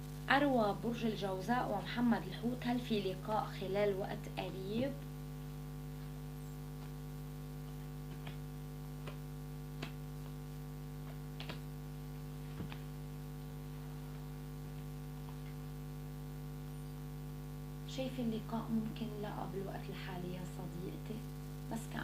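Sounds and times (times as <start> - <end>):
electrical hum: 0.0 - 22.0
faint irregular clicks: 7.6 - 8.4.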